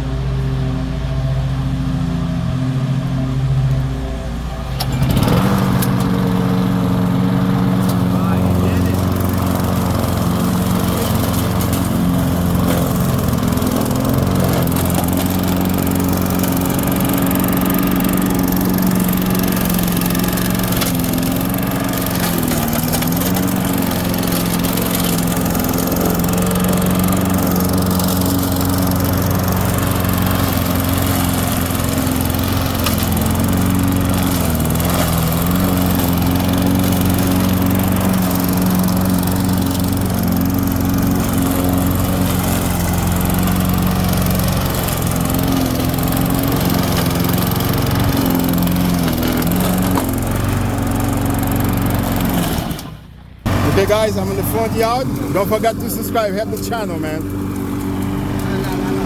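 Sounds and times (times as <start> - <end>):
lawn mower engine running: 0.0 - 59.0.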